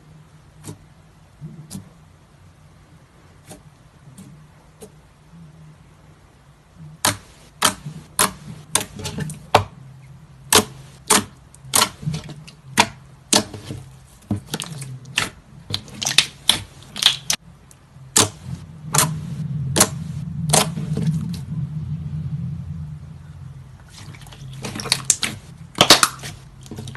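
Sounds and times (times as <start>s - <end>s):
slime popping and clicking: 15.1s - 17.4s, 24.7s - 26.3s
low hum: 16.8s - 26.9s.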